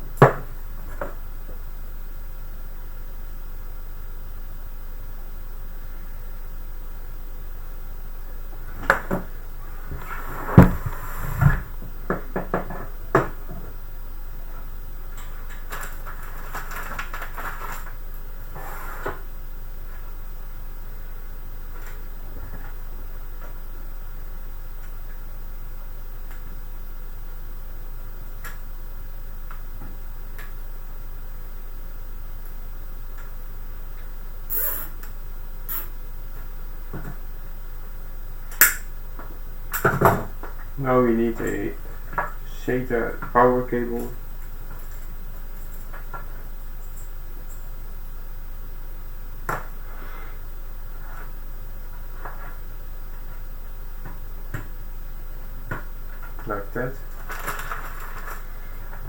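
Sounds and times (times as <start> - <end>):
steady low hum: 0.0 - 59.0
rustling and scraping: 9.8 - 11.9, 16.0 - 19.3, 57.2 - 59.0.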